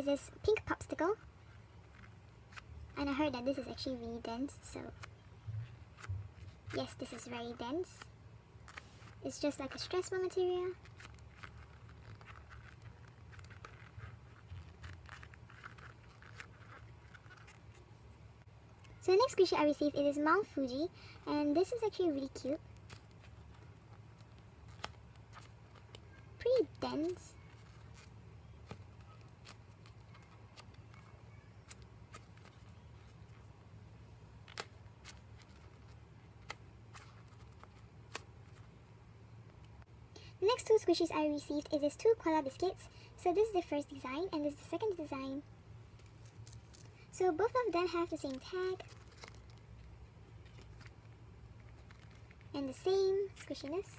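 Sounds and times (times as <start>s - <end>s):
low steady hum: 0.0s - 53.9s
low hum: 4.9s - 6.7s
hands handling foam toy: 4.9s - 19.0s, 22.6s - 33.6s, 34.3s - 38.8s, 45.8s - 47.1s, 48.2s - 52.5s.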